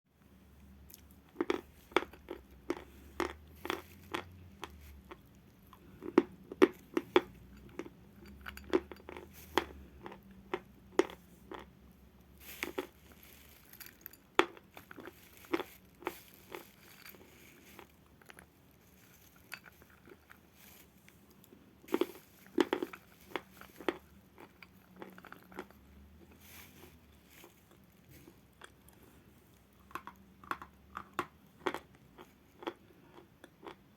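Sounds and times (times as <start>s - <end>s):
person crunching chalk: 12.4s - 18.0s.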